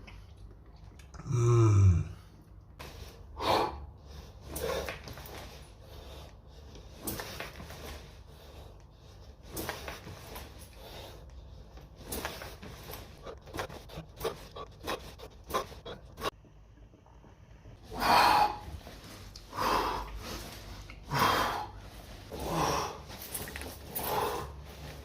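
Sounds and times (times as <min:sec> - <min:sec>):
man breathing hard: 0:17.8 - 0:25.0.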